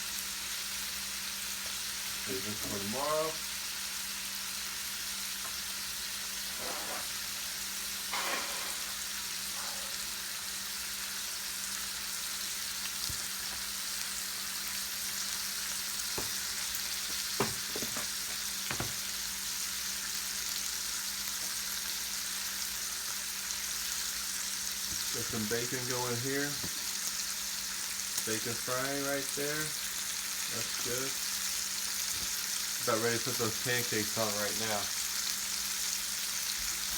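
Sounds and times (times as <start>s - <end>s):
bacon sizzling in a frying pan: 0.0s - 36.9s
utensils knocking: 17.4s - 19.0s.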